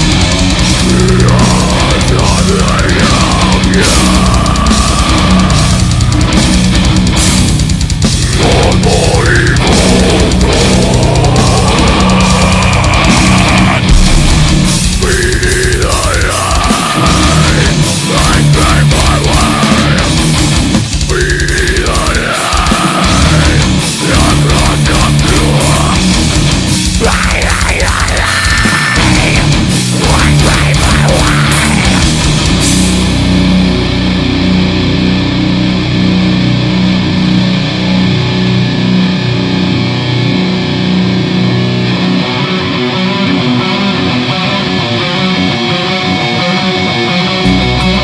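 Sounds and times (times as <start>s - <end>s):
heavy rock band music: 0.0s - 48.0s
cymbal crashes: 13.9s - 15.0s.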